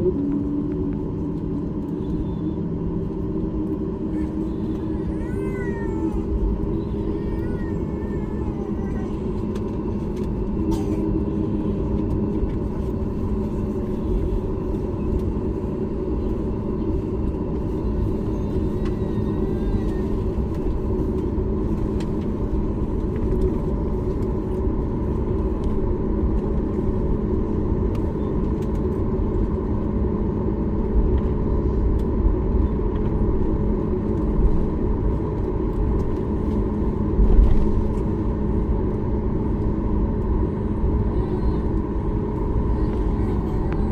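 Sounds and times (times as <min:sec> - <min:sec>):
airplane cabin rumble: 0:00.0 - 0:43.9
steady hum: 0:00.0 - 0:43.9.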